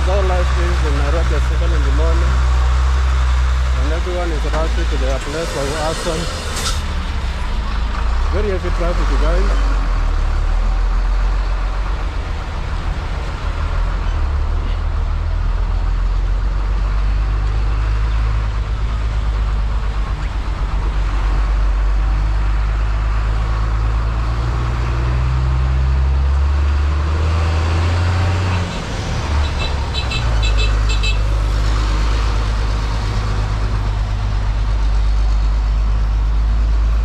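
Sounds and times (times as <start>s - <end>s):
vehicle engines rumbling in traffic: 0.0s - 37.0s.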